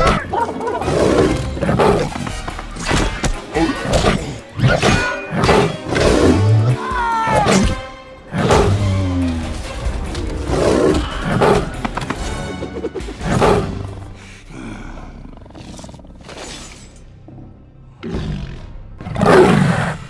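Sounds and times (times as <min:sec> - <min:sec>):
dramatic film music: 0:00.0 - 0:20.0
big cat roaring: 0:14.5 - 0:16.9, 0:17.9 - 0:20.0.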